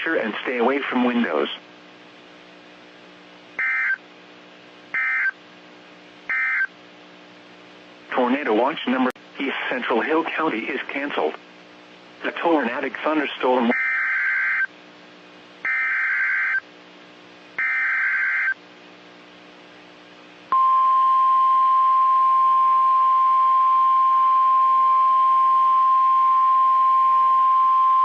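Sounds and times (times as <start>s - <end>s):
steady alarm tone: 3.6s - 4.0s, 5.0s - 5.4s, 6.3s - 6.7s, 13.7s - 14.7s, 15.7s - 16.6s, 17.6s - 18.6s
screeching data bursts: 15.7s - 16.6s, 17.6s - 18.6s.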